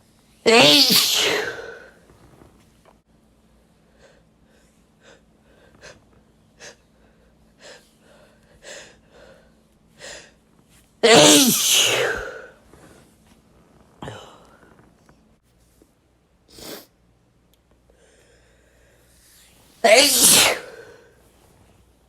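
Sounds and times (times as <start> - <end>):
man sneezing: 0.5 - 1.9, 11.0 - 12.6, 19.8 - 21.0.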